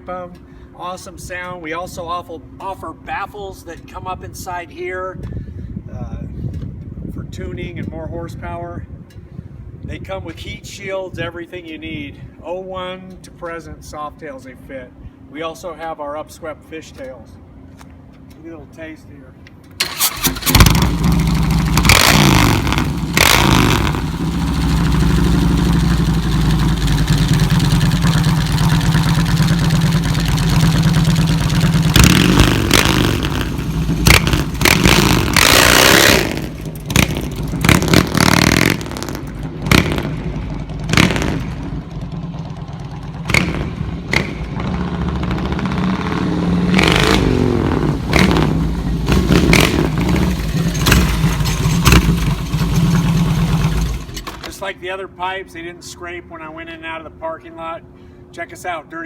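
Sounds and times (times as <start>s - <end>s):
motorcycle engine revving: 19.8s - 54.5s.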